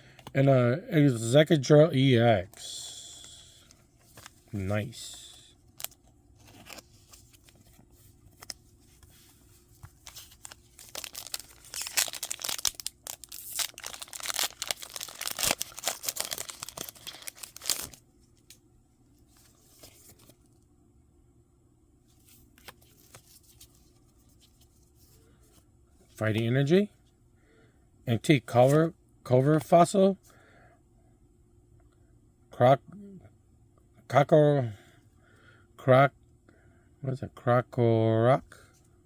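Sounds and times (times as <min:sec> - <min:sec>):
foil wrapper crinkling: 0:09.6 - 0:18.0.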